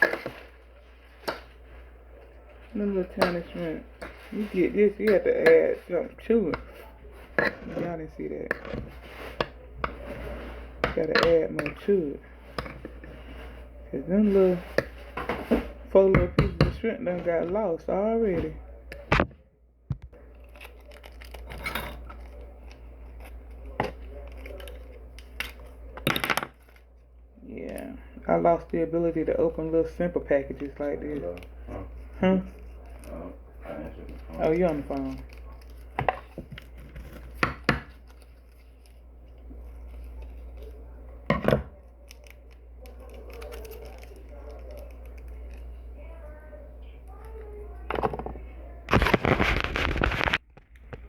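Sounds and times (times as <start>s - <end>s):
low steady hum: 0.0s - 51.0s
plastic packet crinkling: 20.2s - 25.8s, 32.5s - 40.8s, 42.0s - 46.2s, 48.9s - 50.5s.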